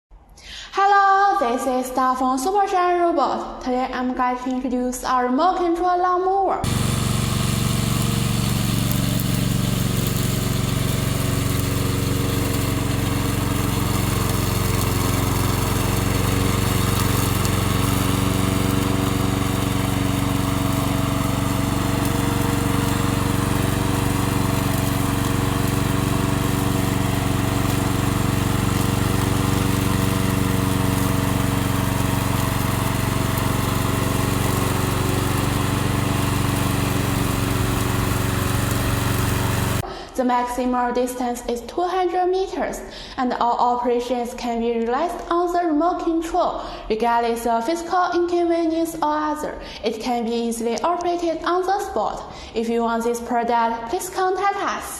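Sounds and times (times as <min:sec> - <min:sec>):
mower gasoline engine running: 0:06.6 - 0:39.8.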